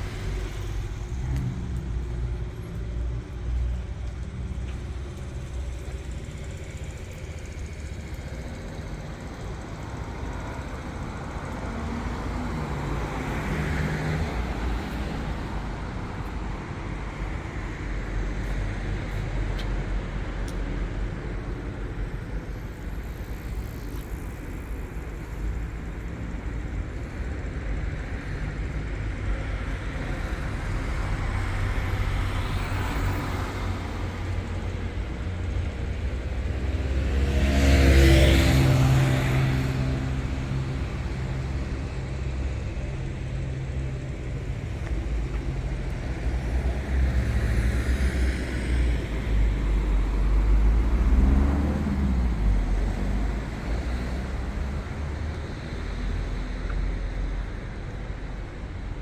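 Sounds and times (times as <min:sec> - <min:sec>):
cars driving past: 0:00.0 - 0:59.0.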